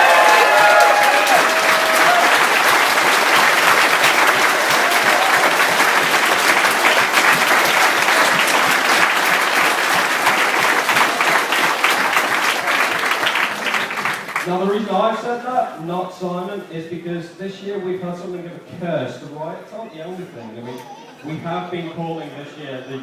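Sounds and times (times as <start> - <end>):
audience applauding: 0.0 - 14.8.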